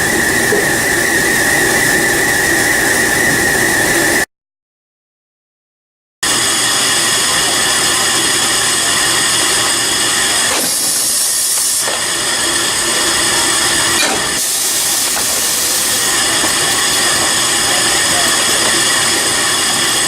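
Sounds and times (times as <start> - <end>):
factory machinery running: 0.0 - 4.3, 6.2 - 20.0
whining machine tones: 0.0 - 4.3, 6.2 - 20.0.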